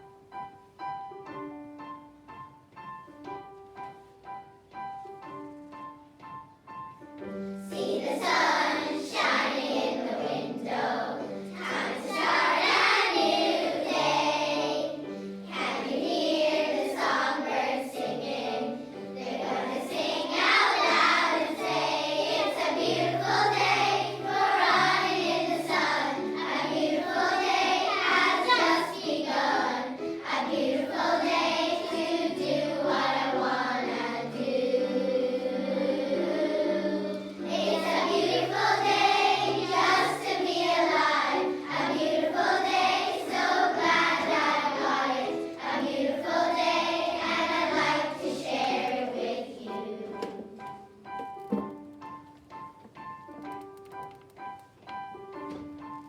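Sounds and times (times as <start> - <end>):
instrumental accompaniment: 0.0 - 56.0
children's choir singing: 7.2 - 53.0.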